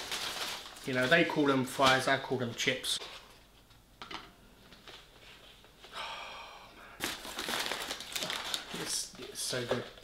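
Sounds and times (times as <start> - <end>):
paper bags rustling: 0.0 - 3.0, 7.0 - 10.0
person breathing: 5.8 - 7.3.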